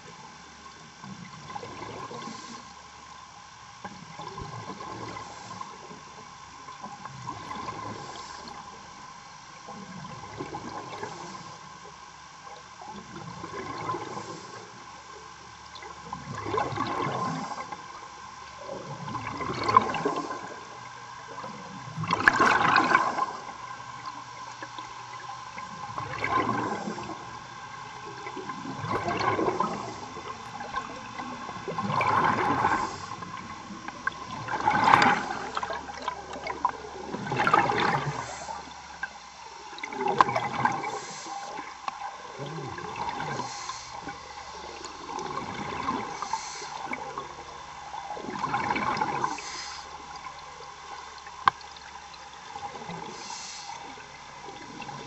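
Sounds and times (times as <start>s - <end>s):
faint steady hum: 0.0s - 55.0s
exhaled breath bubbling underwater: 13.0s - 14.9s, 16.0s - 18.0s, 18.6s - 50.4s.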